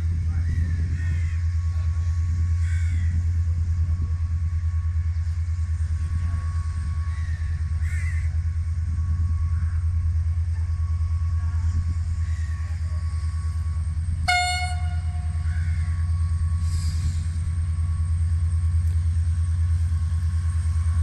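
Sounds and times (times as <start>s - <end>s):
diesel locomotive engine rumble: 0.0s - 21.0s
crows cawing: 1.0s - 1.5s, 2.6s - 3.2s, 7.1s - 8.4s, 15.2s - 16.1s.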